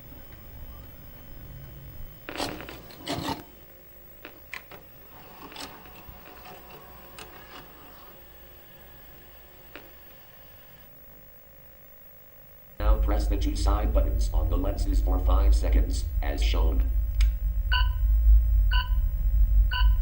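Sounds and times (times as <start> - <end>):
rasping bursts: 1.7 - 4.3.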